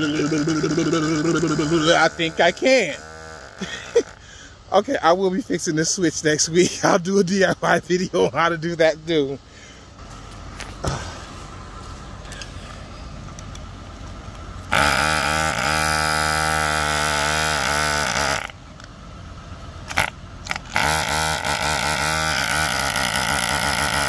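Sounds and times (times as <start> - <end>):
air pump buzzing drone: 0.0 - 4.6, 14.3 - 18.6, 19.8 - 24.0.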